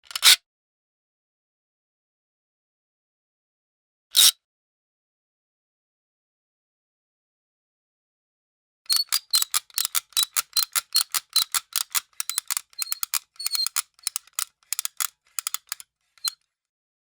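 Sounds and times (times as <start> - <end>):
gadget clicking with high ring: 8.9 - 16.4.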